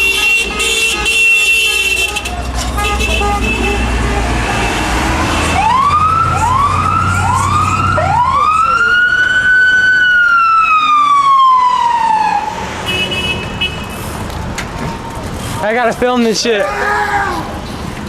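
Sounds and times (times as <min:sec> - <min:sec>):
traffic rumble: 0:00.0 - 0:18.0
emergency vehicle siren: 0:04.2 - 0:12.7.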